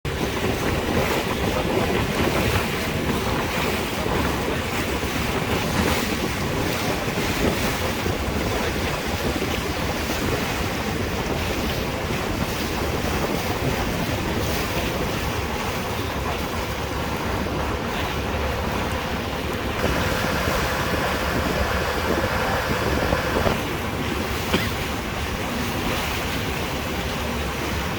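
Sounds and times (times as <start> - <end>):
wind buffeting microphone: 0.1 - 27.9
sea water rushing: 13.8 - 27.9.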